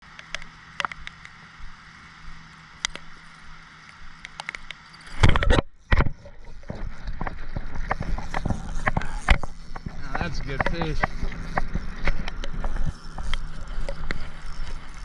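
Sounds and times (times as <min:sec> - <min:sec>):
sharp ticks: 0:03.9 - 0:15.0.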